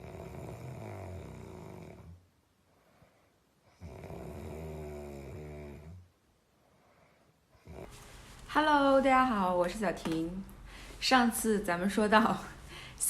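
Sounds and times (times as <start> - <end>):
man snoring: 0.0 - 2.2, 3.7 - 6.1, 7.6 - 8.0.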